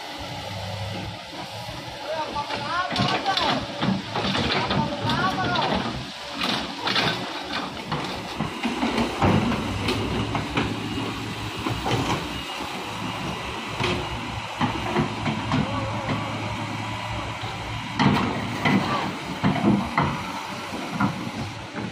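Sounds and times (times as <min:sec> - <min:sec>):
earthmoving machinery engine hum: 0:00.0 - 0:21.9.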